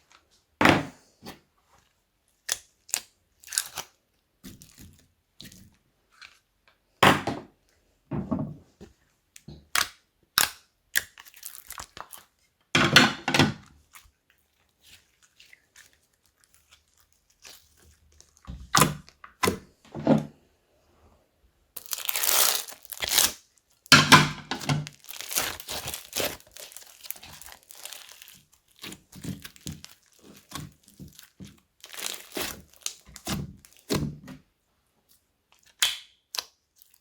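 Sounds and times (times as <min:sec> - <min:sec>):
slime squished by hand: 0:21.8 - 0:23.4, 0:24.8 - 0:34.1.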